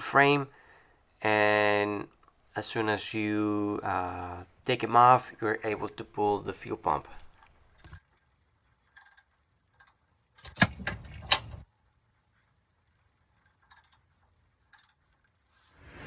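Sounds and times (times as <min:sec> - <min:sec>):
metallic clicks of hand tools: 0:00.0 - 0:00.5, 0:03.4 - 0:03.9, 0:04.8 - 0:05.8, 0:07.8 - 0:08.3, 0:09.0 - 0:10.7, 0:13.6 - 0:14.0, 0:14.7 - 0:15.0.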